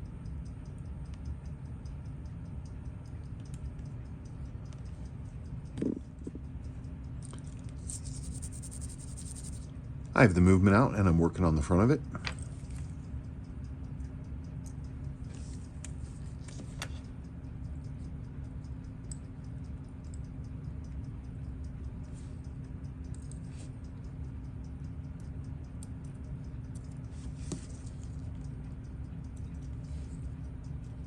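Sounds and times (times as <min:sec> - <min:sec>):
steady low hum: 0:00.0 - 0:31.0
fast even ticking: 0:07.9 - 0:09.7.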